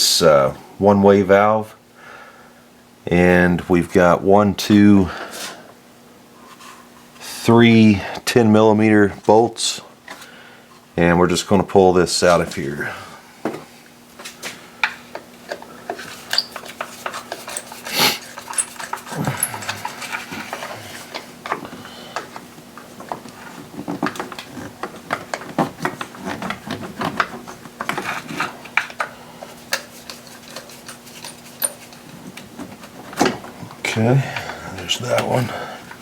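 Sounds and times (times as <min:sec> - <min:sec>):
faint steady hum: 0:00.0 - 0:36.0
hand tools and parts clattering: 0:14.2 - 0:36.0.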